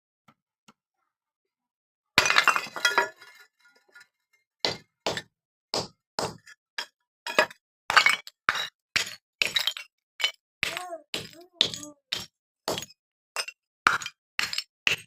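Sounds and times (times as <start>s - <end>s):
clay pot breaking: 2.2s - 3.4s
pottery pieces crunching: 7.3s - 15.0s.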